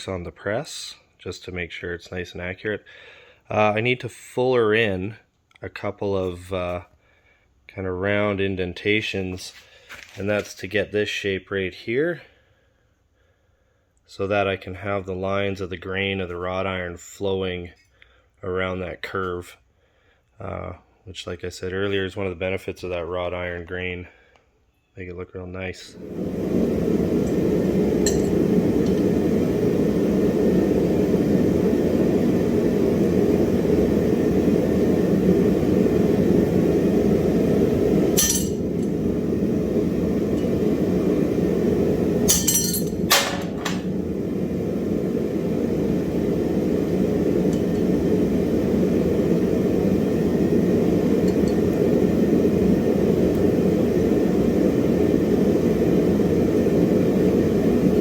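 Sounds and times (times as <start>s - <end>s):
workshop machinery running: 25.9s - 58.0s.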